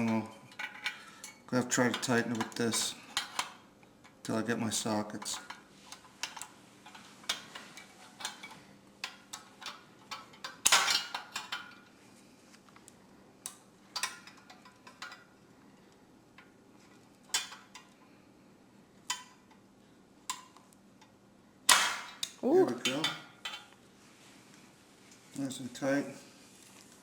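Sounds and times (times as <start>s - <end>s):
metal clicks and clinks: 5.2s - 11.8s.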